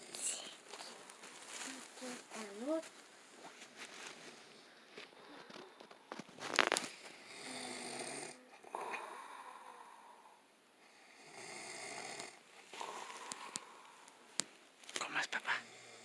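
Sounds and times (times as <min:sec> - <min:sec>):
man snoring: 0:07.2 - 0:10.4, 0:11.1 - 0:13.6.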